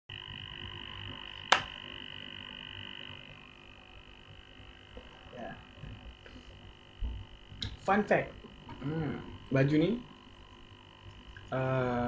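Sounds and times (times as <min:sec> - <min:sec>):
high-pitched whine: 0:00.1 - 0:12.0
sharp click: 0:01.4 - 0:01.8.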